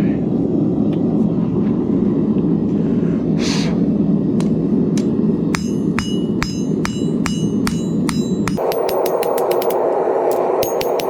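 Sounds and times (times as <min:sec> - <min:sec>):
hammer blows on hot steel: 0:05.0 - 0:11.0.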